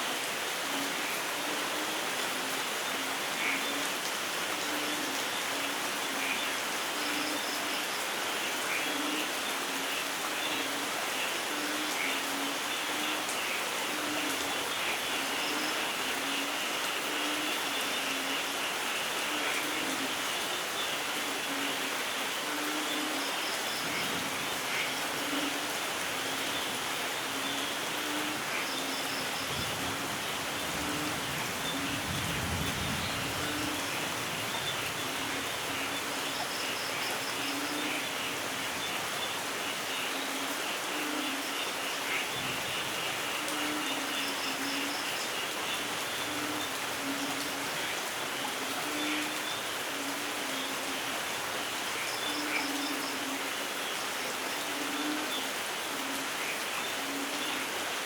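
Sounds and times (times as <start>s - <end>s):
light rain falling: 0.0s - 58.0s.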